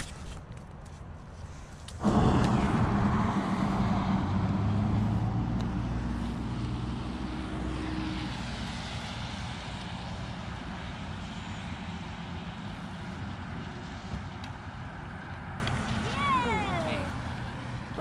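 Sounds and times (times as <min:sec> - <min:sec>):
low hum: 0:01.7 - 0:08.9
passing vehicle engine: 0:02.0 - 0:14.4, 0:15.1 - 0:18.0.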